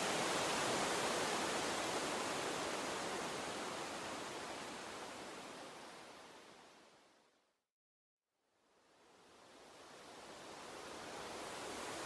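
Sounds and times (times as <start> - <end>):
stream water running: 0.0 - 6.3.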